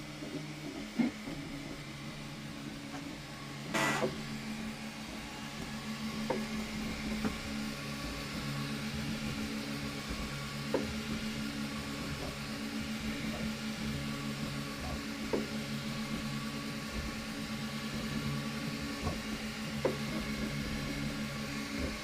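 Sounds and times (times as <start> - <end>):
stepper motors humming: 0.0 - 22.0.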